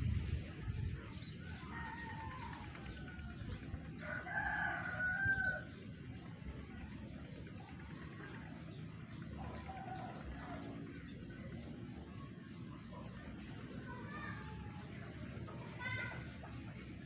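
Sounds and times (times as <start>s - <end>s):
rooster crowing: 4.0s - 5.7s.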